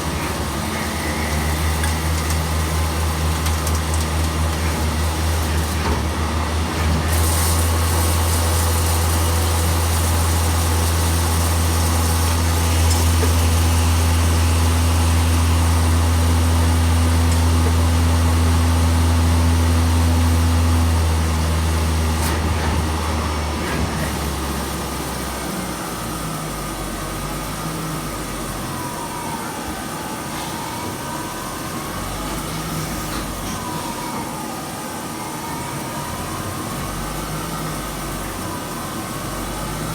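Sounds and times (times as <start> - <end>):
lathe running with low hum: 0.0 - 28.9.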